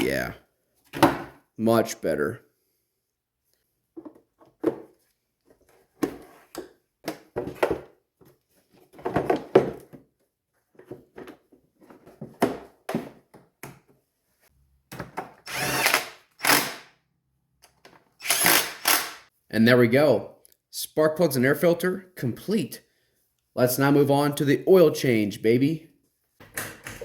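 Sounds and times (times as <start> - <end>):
power tool bursts: 15.5 - 16.9, 18.2 - 19.3.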